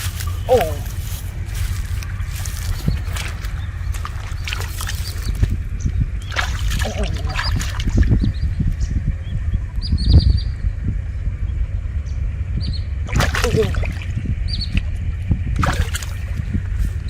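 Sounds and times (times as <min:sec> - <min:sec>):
water sloshing and splashing: 0:00.0 - 0:08.2, 0:13.1 - 0:17.0
bird chirping: 0:00.0 - 0:14.9
steady low rumble: 0:00.0 - 0:17.0.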